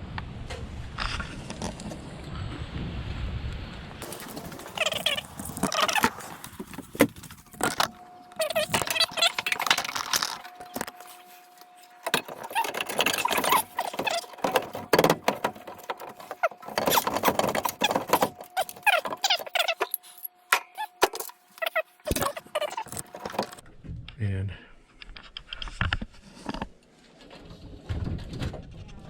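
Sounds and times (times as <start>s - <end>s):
faint steady hum: 0.0s - 27.0s
metal parts clattering: 4.0s - 23.6s.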